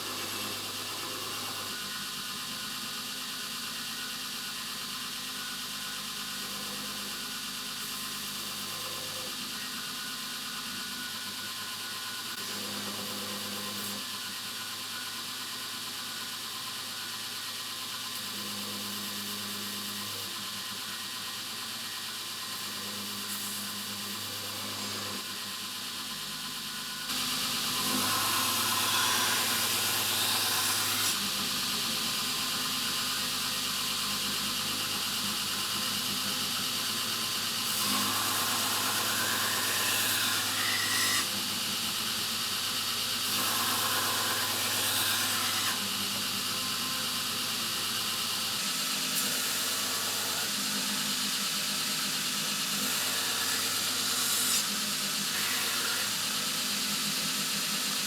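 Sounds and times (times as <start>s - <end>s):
belt grinder running: 0.0s - 3.6s, 16.2s - 58.0s.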